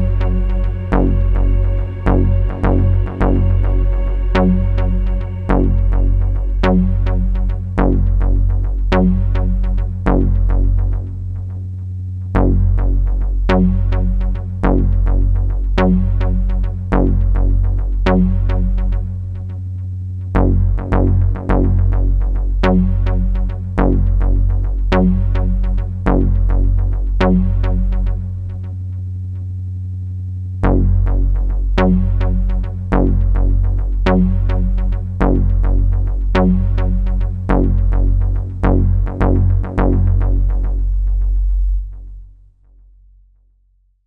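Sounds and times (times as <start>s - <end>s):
electronic music with synthesizer: 0.0s - 11.0s.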